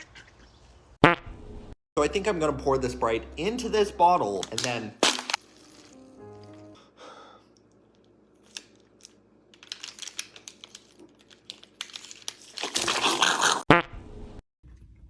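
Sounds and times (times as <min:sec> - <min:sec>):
plastic bottle crinkling: 0:04.4 - 0:06.0, 0:07.8 - 0:13.6.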